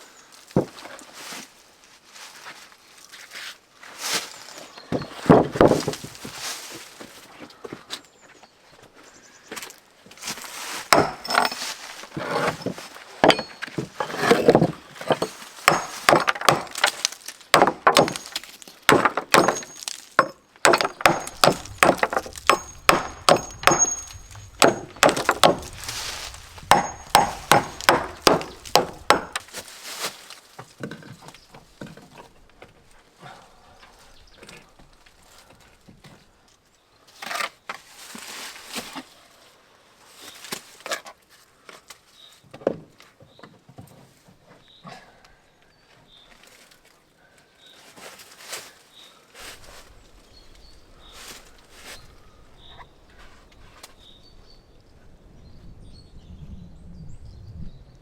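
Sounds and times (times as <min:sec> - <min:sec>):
hammer striking: 0:10.9 - 0:11.6, 0:15.1 - 0:16.9, 0:17.6 - 0:25.8, 0:26.6 - 0:29.4.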